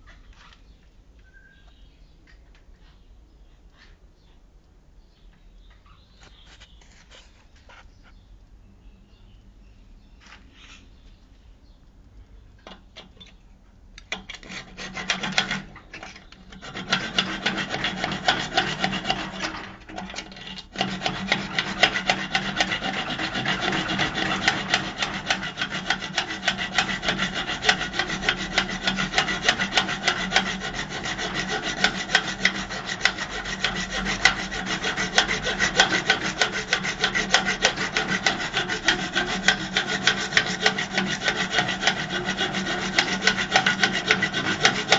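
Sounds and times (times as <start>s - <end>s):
rasping scraping on metal: 14.1s - 44.9s.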